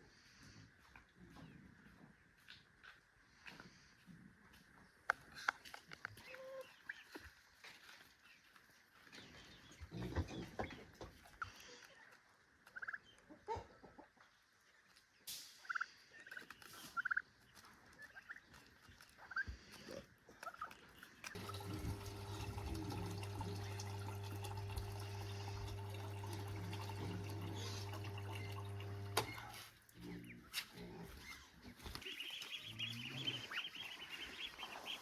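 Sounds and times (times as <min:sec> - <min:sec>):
ducklings peeping: 0:06.2 - 0:07.2, 0:17.9 - 0:21.3, 0:26.3 - 0:35.0.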